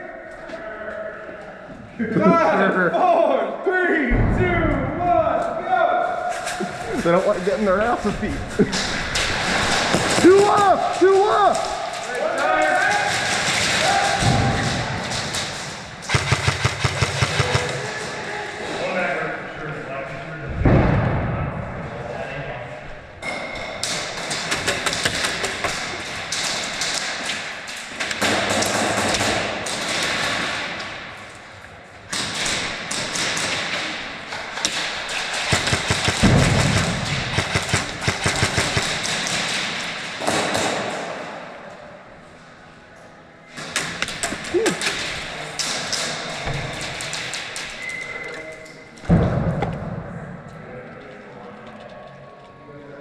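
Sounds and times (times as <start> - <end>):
pellets striking walls: 7.1 - 18.3, 23.2 - 31.2, 32.1 - 41.4
airsoft gunfire clattering: 12.8 - 18.1, 32.1 - 41.3
heavy thud: 20.5 - 21.8.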